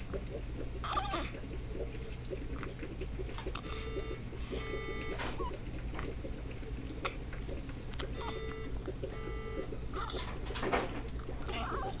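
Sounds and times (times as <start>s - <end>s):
soft held tones: 3.6s - 5.6s, 8.1s - 10.1s
baby hiccuping: 8.2s - 8.5s.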